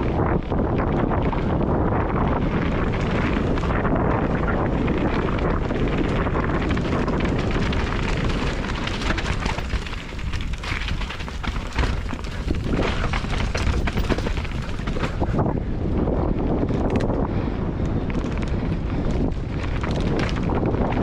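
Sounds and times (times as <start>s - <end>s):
mountain bike rattling: 0.0s - 21.0s
wind buffeting microphone: 0.0s - 21.0s
bike clattering over bumps: 0.4s - 15.6s, 18.1s - 21.0s.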